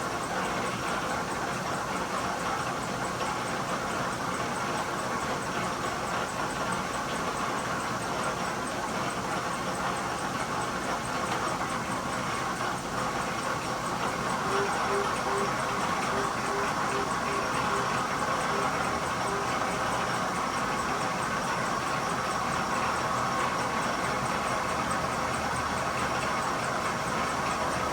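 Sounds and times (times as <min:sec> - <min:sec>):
lathe whirring: 0:11.2 - 0:27.9
fast even ticking: 0:13.7 - 0:24.2.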